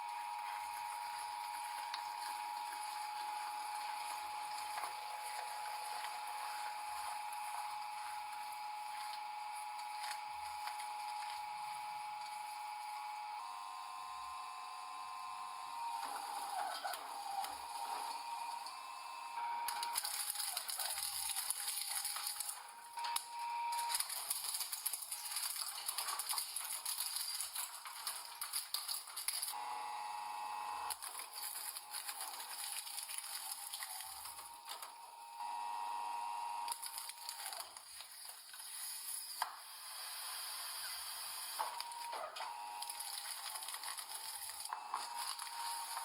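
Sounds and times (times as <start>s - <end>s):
machine whine: 0.0s - 37.8s, 38.7s - 46.0s
objects crackling and snapping: 19.6s - 29.6s, 30.8s - 35.0s, 41.6s - 46.0s.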